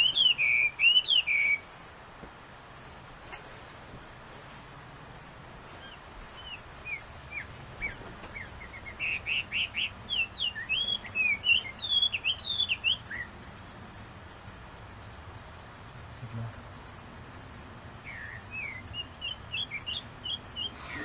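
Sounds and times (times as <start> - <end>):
bird singing whistled notes: 0.0 - 1.7, 5.8 - 13.3, 18.0 - 21.0.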